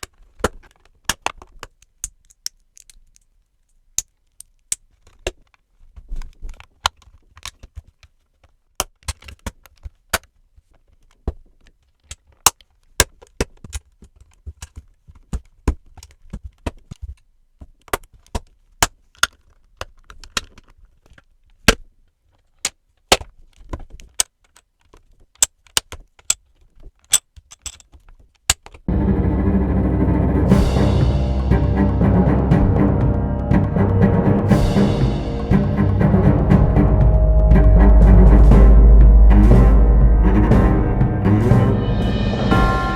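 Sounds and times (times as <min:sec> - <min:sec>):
plastic bricks clicking together: 0:00.0 - 0:05.6, 0:22.6 - 0:28.8.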